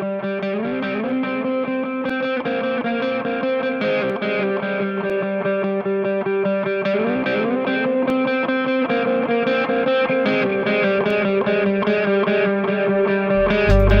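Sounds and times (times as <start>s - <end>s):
distorted electric guitar chords: 0.0s - 14.0s.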